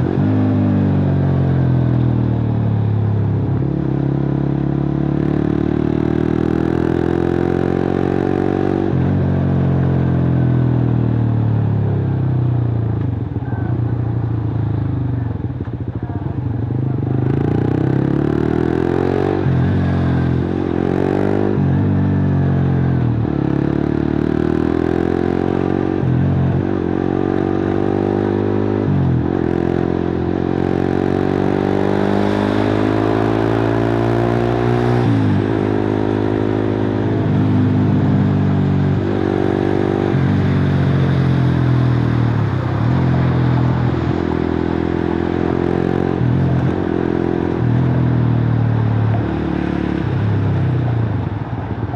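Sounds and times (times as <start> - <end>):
motorcycle engine accelerating: 0.0 - 51.9.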